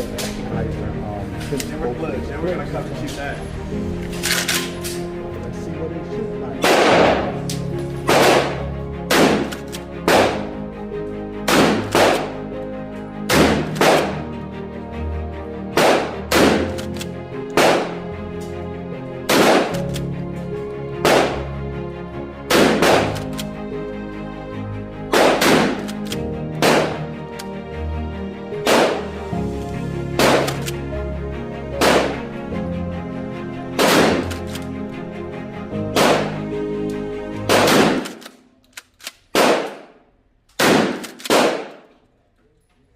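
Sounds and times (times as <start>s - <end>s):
background music: 0.0s - 42.0s
shotgun firing: 6.6s - 7.4s, 8.1s - 10.5s, 11.5s - 12.4s, 13.3s - 14.2s, 15.8s - 16.8s, 17.5s - 18.0s, 19.3s - 19.8s, 21.0s - 21.5s, 22.5s - 23.3s, 25.1s - 25.9s, 26.6s - 27.1s, 28.6s - 29.1s, 30.2s - 30.7s, 31.8s - 32.2s, 33.8s - 34.4s, 36.0s - 36.4s, 37.5s - 38.3s, 39.3s - 40.0s, 40.6s - 41.9s.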